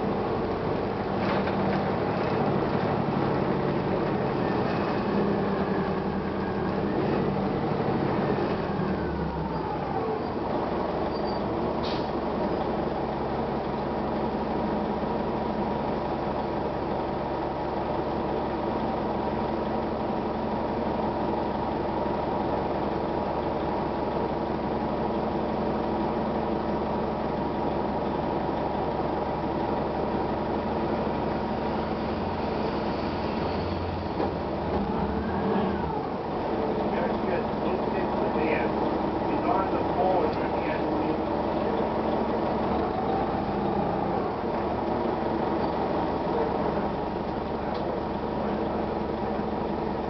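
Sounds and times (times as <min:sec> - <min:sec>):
bus diesel engine running: 0:00.0 - 0:50.0.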